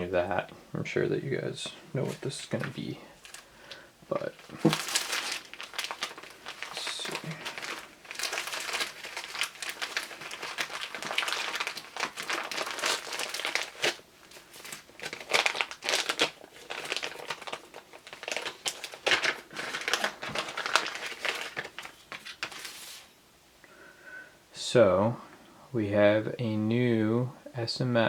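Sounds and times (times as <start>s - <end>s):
packaging crinkling and rustling: 1.6s - 23.1s.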